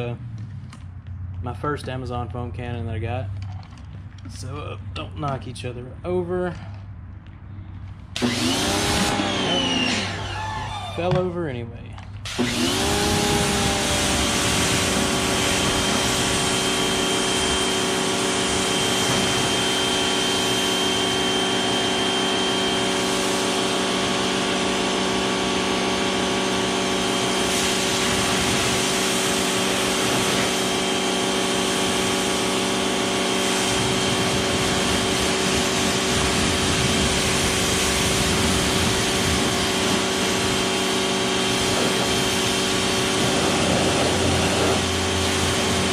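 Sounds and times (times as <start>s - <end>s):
pressure washer motor running: 8.1s - 11.4s, 12.2s - 45.9s
water spraying hiss: 12.2s - 20.8s, 25.8s - 45.9s.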